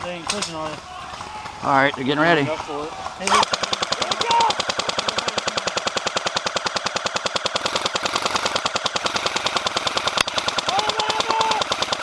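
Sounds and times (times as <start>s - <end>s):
airsoft gun full-auto rattle: 3.2s - 12.0s.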